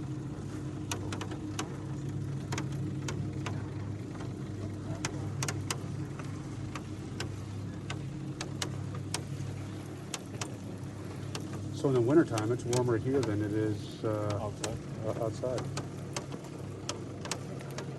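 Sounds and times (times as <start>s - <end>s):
cable lift mechanical hum: 0.0s - 17.9s
sharp clicks and ticks: 2.4s - 9.3s, 10.1s - 10.6s, 11.2s - 17.9s.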